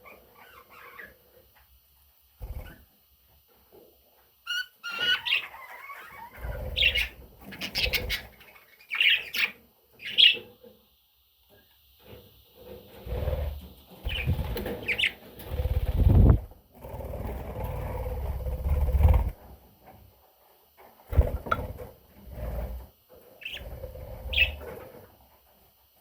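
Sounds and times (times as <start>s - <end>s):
budgerigar chirping: 4.5s - 10.4s
wings flapping: 12.9s - 19.4s, 21.1s - 21.9s.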